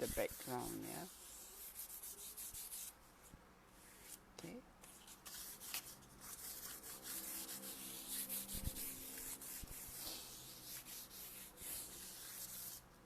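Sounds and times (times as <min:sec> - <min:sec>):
sandpaper rubbing on wood: 0:00.0 - 0:02.9, 0:04.9 - 0:12.8.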